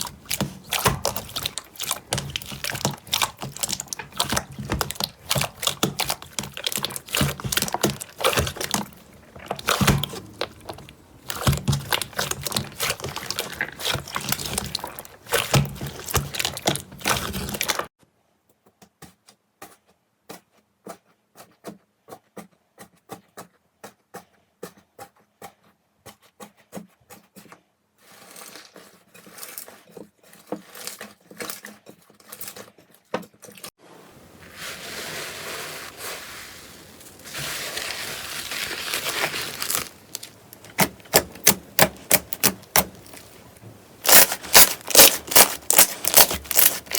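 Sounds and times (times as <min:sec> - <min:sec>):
slime crackling and popping: 0:00.0 - 0:17.9, 0:37.2 - 0:43.4, 0:44.0 - 0:46.9.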